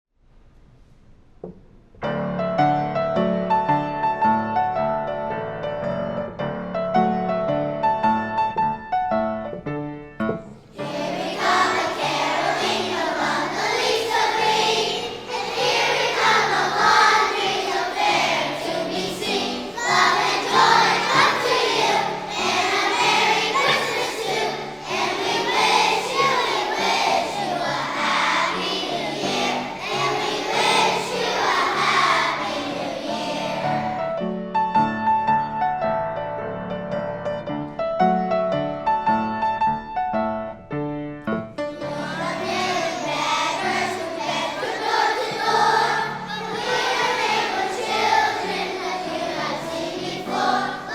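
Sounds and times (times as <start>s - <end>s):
piano: 0.2s - 50.9s
children's choir singing: 10.5s - 34.2s, 41.6s - 50.9s.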